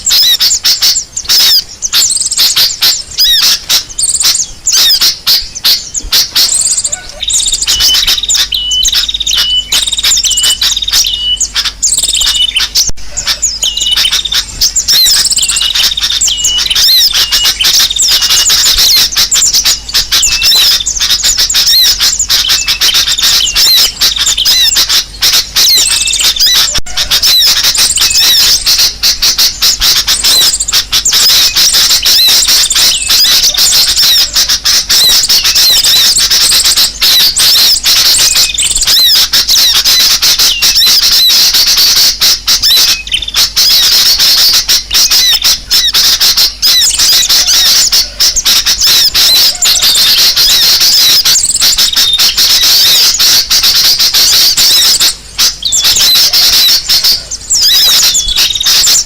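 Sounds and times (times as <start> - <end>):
flock of small birds chirping: 0.0 - 59.0.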